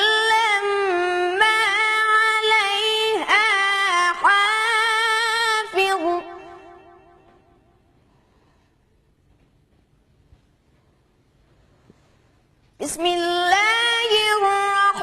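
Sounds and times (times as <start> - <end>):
melodic recitation by high voice: 0.0 - 6.8, 12.8 - 15.0.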